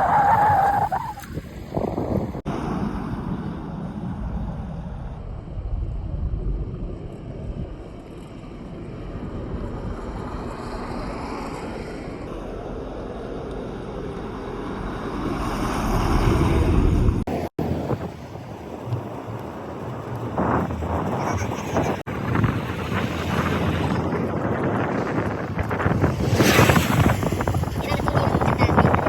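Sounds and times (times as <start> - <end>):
wind buffeting microphone: 0.0 - 29.0
sea surf washing: 8.4 - 29.0.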